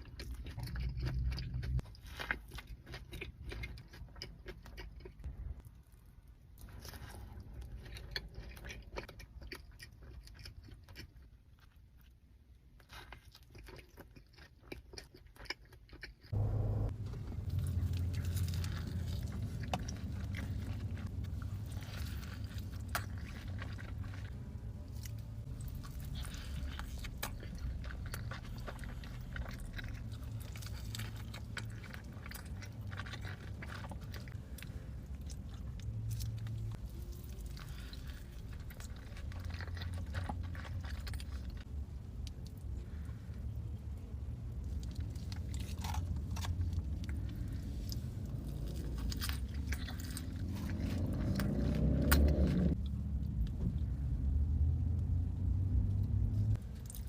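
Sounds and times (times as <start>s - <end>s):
person chewing and crunching food: 0.0s - 57.0s
low hum: 16.4s - 57.0s.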